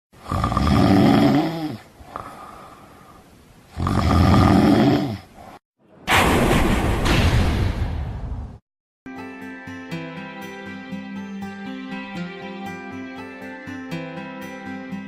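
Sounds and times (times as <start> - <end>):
person snoring: 0.2 - 5.6
quiet breath: 2.0 - 3.4.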